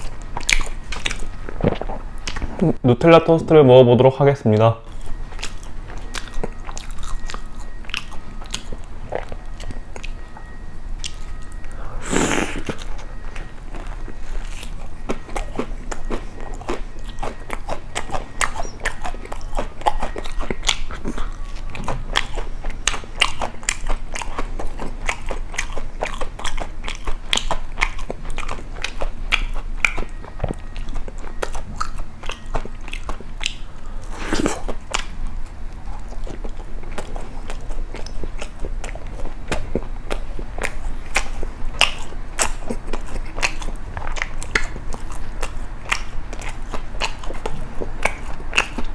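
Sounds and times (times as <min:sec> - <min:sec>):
crunchy toast being chewed: 0:00.0 - 0:02.8, 0:04.9 - 0:48.9.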